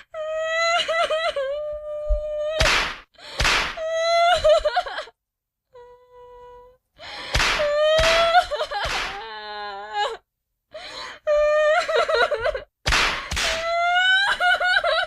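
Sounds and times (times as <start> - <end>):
girl crying and wailing: 0.1 - 2.6, 3.8 - 5.1, 7.6 - 10.2, 11.3 - 12.7, 13.4 - 15.0.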